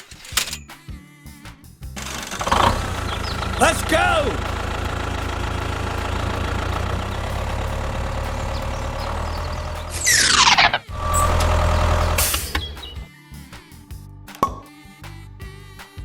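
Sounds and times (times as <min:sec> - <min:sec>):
mini tractor engine running: 0:02.0 - 0:12.8.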